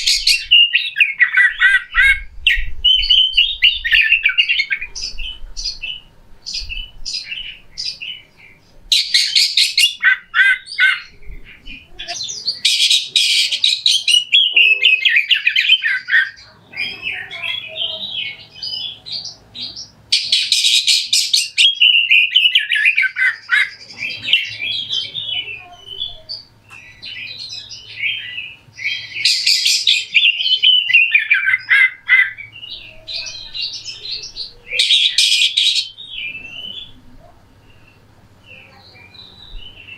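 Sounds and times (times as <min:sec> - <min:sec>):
bird singing harsh song: 0:00.0 - 0:39.9.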